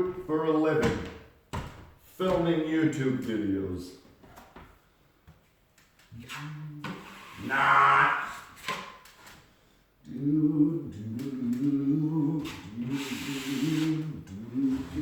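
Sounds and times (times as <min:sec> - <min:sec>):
man humming: 0:06.2 - 0:08.6, 0:10.0 - 0:15.0.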